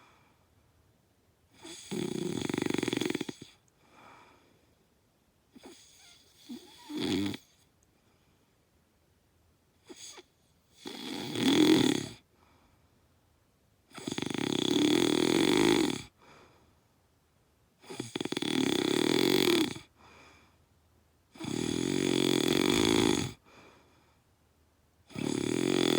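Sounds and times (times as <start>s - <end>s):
loud snoring: 1.6s - 3.6s, 5.6s - 7.6s, 9.8s - 12.2s, 13.9s - 16.1s, 17.8s - 19.9s, 21.3s - 23.4s, 25.1s - 25.9s.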